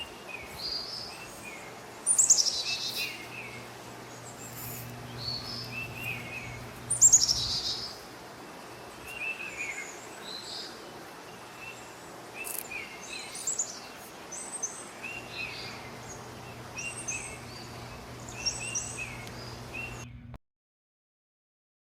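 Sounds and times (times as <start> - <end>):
faint low hum: 0.0 - 9.2, 14.8 - 20.4
songbirds chirping and singing: 0.0 - 20.3.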